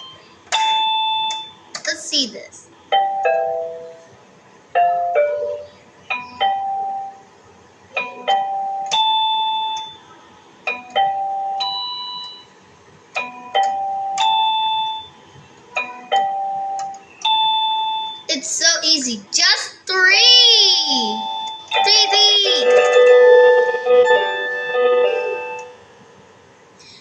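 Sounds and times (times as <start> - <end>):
piano notes: 2.9 - 4.1, 4.7 - 7.2, 7.9 - 9.8, 10.6 - 11.8, 15.7 - 18.3, 20.3 - 26.0.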